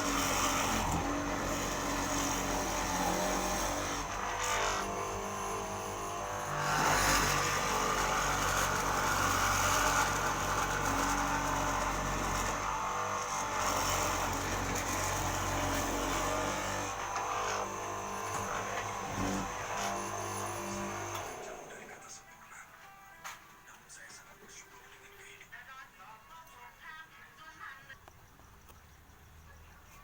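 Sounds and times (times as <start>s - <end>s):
bit cutting into wood: 0.0s - 22.1s
electric motor running: 0.0s - 22.2s.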